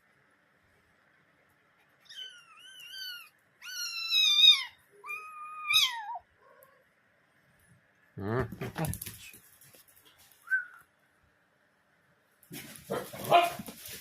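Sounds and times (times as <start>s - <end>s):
cat meowing: 2.0s - 6.8s.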